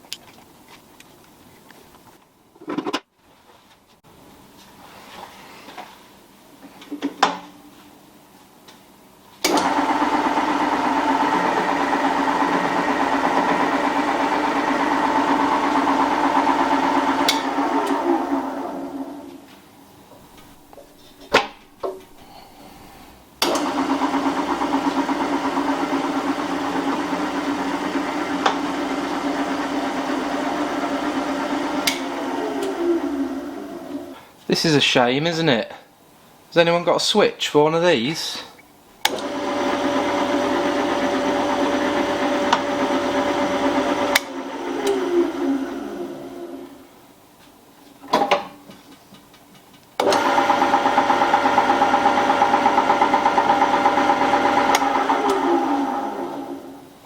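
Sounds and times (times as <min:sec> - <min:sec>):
drill press motor humming: 0:09.5 - 0:19.3, 0:23.4 - 0:34.1, 0:39.0 - 0:46.8, 0:50.0 - 0:56.8.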